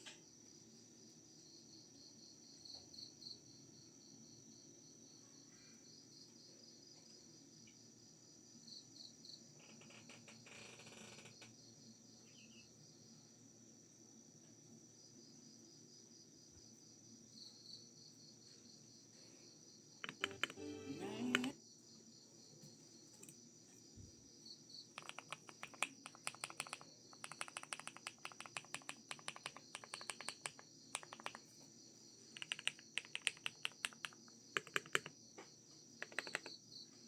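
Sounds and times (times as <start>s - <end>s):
crickets chirping: 0.2s - 20.6s, 21.5s - 37.0s
mechanical keyboard keys clicking: 20.0s - 21.5s, 25.0s - 31.5s, 32.4s - 35.1s, 36.0s - 36.6s.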